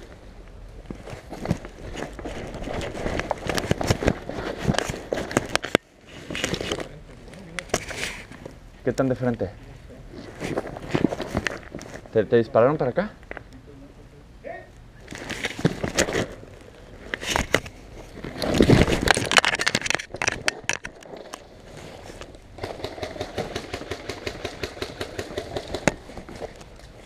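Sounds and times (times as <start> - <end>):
rumbling and rustling: 0.0 - 12.6, 15.0 - 27.0
airsoft gun rapid clicks: 22.6 - 26.0.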